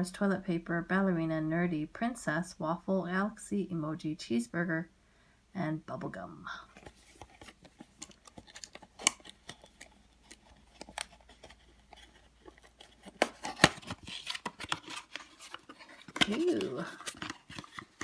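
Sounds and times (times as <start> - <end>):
cardboard and plastic rustling: 6.7 - 18.0
packaging being opened: 6.8 - 18.0.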